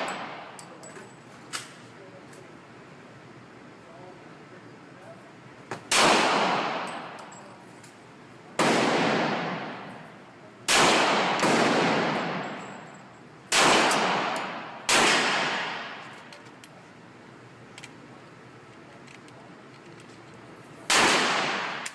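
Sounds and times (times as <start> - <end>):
pistol shots with echo: 0.0 - 0.7, 5.9 - 7.3, 8.6 - 10.0, 10.6 - 12.9, 13.5 - 16.3, 20.9 - 21.9.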